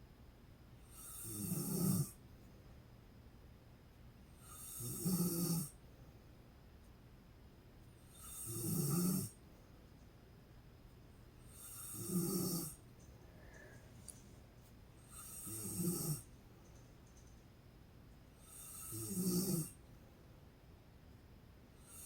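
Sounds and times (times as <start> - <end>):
woman snoring: 0.9 - 2.2, 4.4 - 5.7, 8.2 - 9.4, 11.5 - 12.8, 15.0 - 16.2, 18.4 - 19.8.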